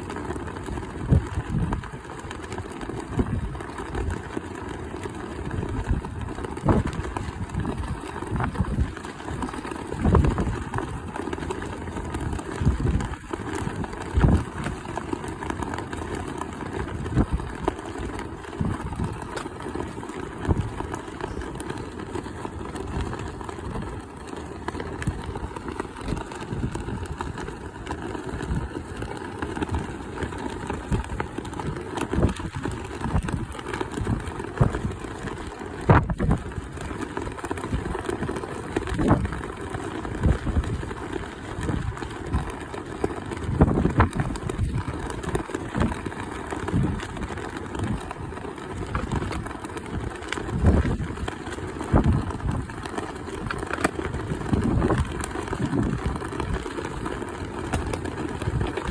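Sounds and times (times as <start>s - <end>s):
strong gusty wind on microphone: 1.0s - 2.0s, 5.4s - 11.2s, 11.8s - 14.8s, 16.8s - 17.8s, 30.7s - 36.8s, 38.8s - 39.4s, 40.1s - 42.5s, 43.4s - 57.1s, 57.7s - 58.9s.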